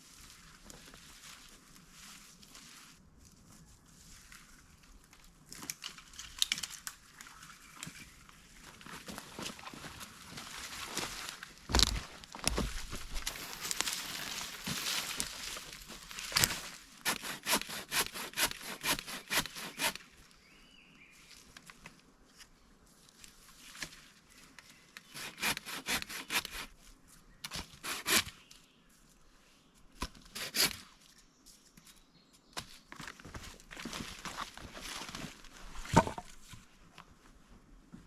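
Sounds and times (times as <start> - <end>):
hand saw cutting wood: 13.3 - 14.8, 16.4 - 20.0, 25.1 - 26.7, 27.6 - 28.3, 30.2 - 30.8.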